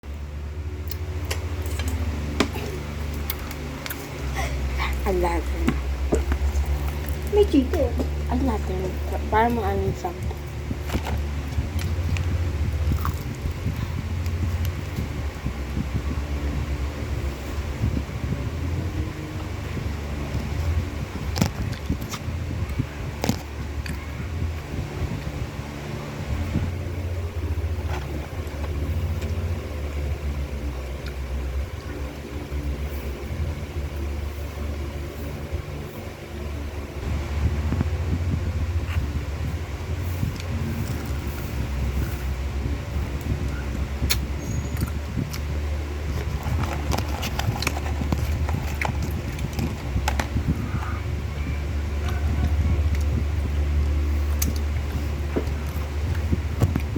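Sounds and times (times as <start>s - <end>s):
low steady hum: 0.0s - 56.9s
chewing clicks and smacks: 12.9s - 13.8s.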